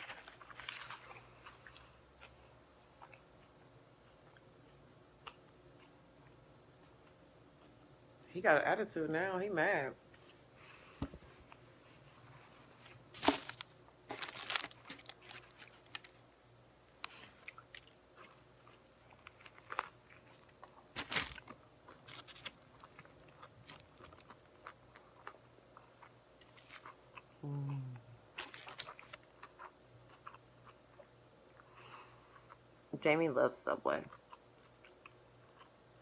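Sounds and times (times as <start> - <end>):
biting and crunching sandwich: 12.9 - 16.4, 17.0 - 31.7.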